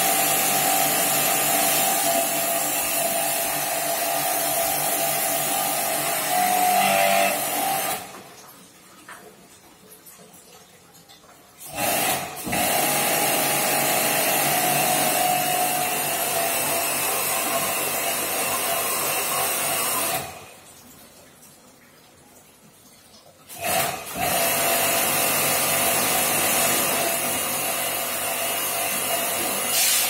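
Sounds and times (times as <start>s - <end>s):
pressure washer jet hissing: 0.0s - 5.9s, 23.7s - 30.0s.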